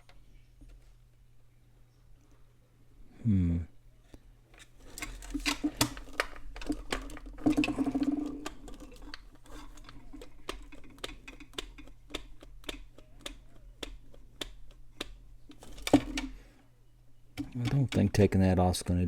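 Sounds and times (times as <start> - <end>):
plastic clicks and taps: 5.1 - 16.4.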